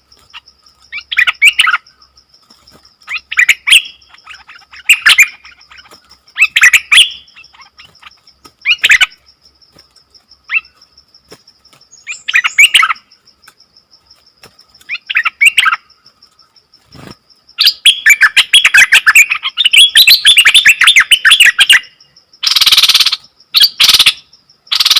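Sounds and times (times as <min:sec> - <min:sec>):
high insect buzz: 0:00.0 - 0:24.9
songbird singing: 0:00.0 - 0:24.9.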